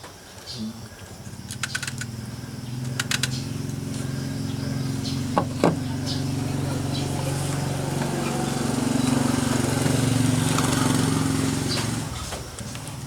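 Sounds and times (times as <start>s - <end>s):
low machine hum: 0.5s - 13.0s
quick clicks: 1.5s - 2.1s, 2.8s - 3.4s.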